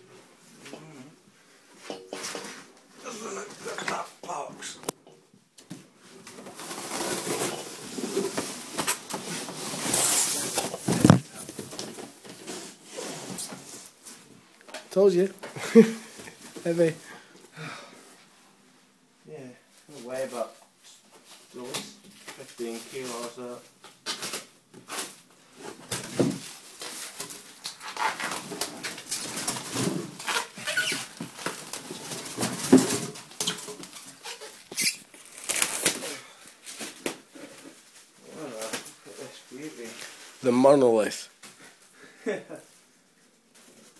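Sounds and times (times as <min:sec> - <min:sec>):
cardboard rustling and scraping: 0:06.1 - 0:14.0, 0:24.0 - 0:40.4.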